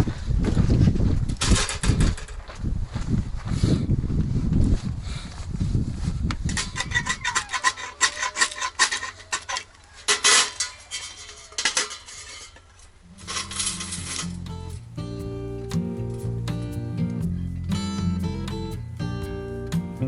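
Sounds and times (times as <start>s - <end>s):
guitar music: 13.1s - 20.0s.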